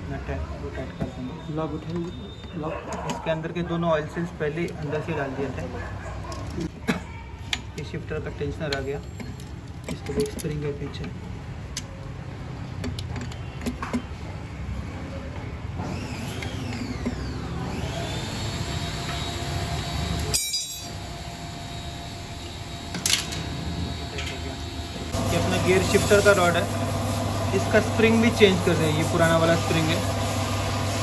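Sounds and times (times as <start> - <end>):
workshop hum: 0.0 - 31.0
metal parts clicking: 8.6 - 12.0.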